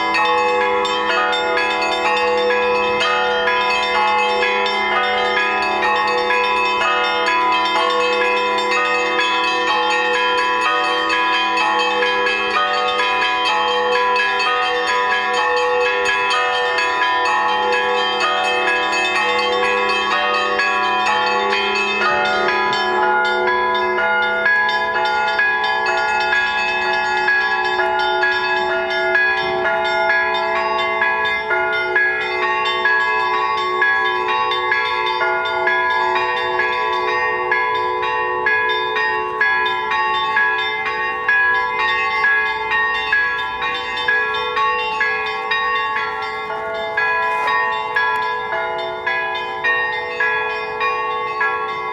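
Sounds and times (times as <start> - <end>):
large bells sustained ringing: 0.0 - 51.9
rapid church bell strokes: 0.0 - 51.9
deep bell hum: 13.4 - 51.9.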